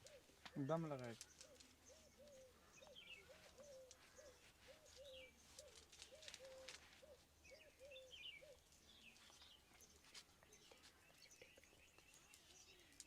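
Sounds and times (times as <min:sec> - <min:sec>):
dove cooing: 0:00.0 - 0:00.5, 0:01.4 - 0:08.7
faint soft clicks: 0:00.0 - 0:04.3, 0:05.0 - 0:07.0, 0:08.5 - 0:13.0
small birds chirping: 0:00.0 - 0:13.0.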